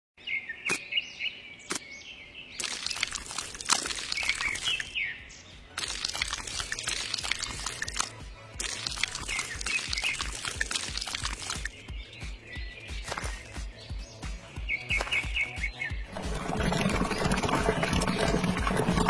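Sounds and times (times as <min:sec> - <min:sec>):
birds chirping: 0:00.2 - 0:19.0
splashing water hiss: 0:02.6 - 0:05.0, 0:05.8 - 0:11.8.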